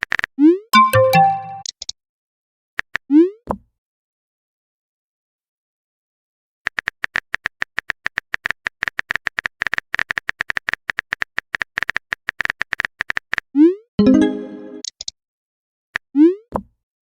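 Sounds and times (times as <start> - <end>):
typing sound effect clicks: 0.8 - 2.0.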